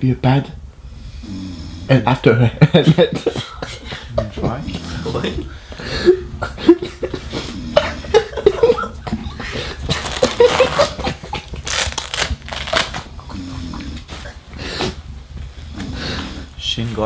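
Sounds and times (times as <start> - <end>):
fabric rustling and rubbing: 9.9 - 11.0, 11.6 - 13.0.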